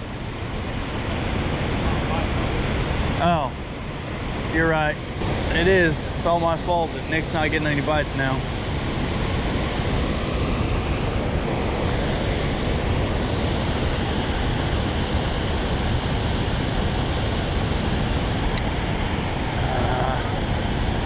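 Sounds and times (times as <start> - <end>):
water roaring from dam release: 4.5 - 21.0.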